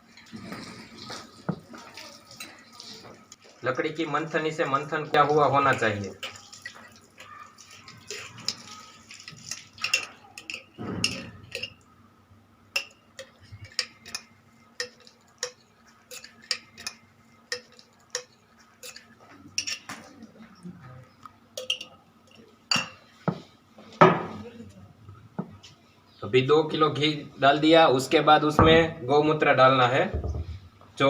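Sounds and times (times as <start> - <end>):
spoon clinking against metal pots: 4.2 - 11.9, 12.7 - 20.1, 21.6 - 23.1.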